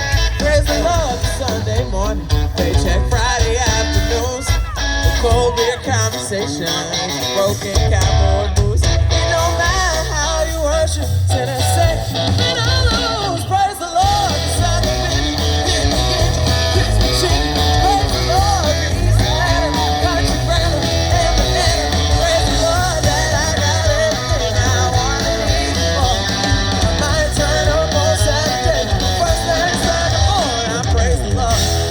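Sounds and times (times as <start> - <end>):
bass and drum beat: 0.0 - 31.9
guitar: 0.0 - 31.9
person singing: 0.0 - 31.9.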